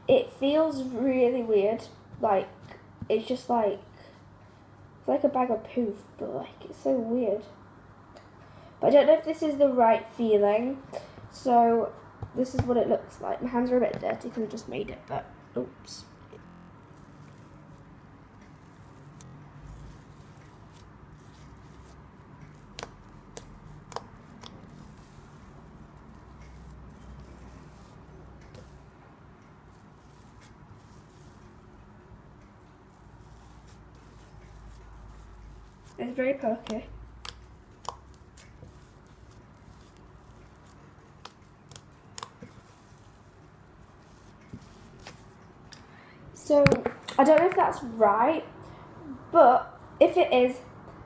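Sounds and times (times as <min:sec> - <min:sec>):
slime sticky crackles: 0:16.8 - 0:45.5.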